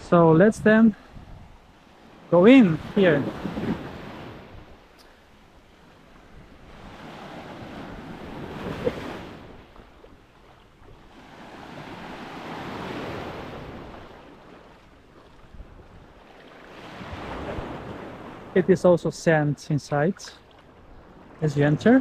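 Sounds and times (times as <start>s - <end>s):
small waves washing on shore: 0.0s - 22.0s
wind buffeting microphone: 0.4s - 4.9s, 15.4s - 16.2s.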